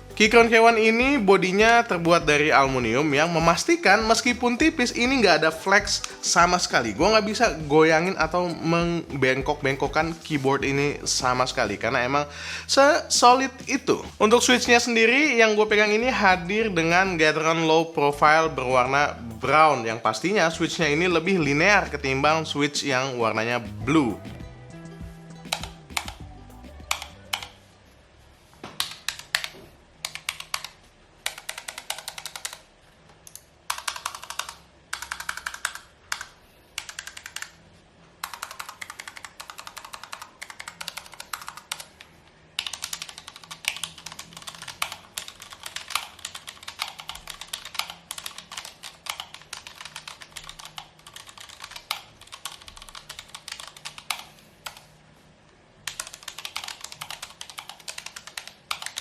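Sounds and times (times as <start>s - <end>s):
mechanical keyboard typing: 25.4s - 27.6s, 28.8s - 32.7s, 33.3s - 37.6s, 38.2s - 54.9s, 55.8s - 59.0s.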